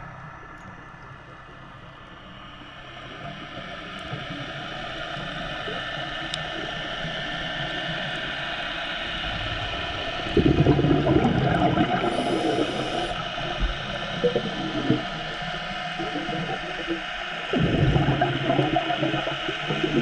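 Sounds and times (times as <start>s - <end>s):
underwater hiss: 4.3s - 20.0s
scuba exhaled bubbles: 9.5s - 20.0s.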